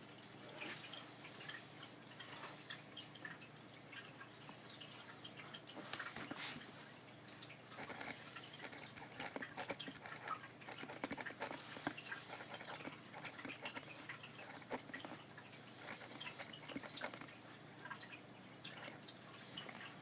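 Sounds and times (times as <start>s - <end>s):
pen scratching on paper: 7.8s - 15.2s, 15.8s - 17.3s.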